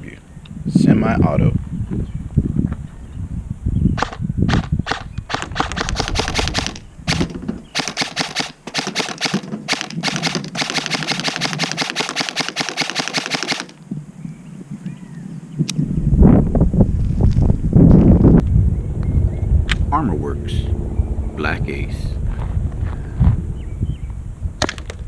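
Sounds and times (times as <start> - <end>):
airsoft gun firing: 4.0 - 13.8.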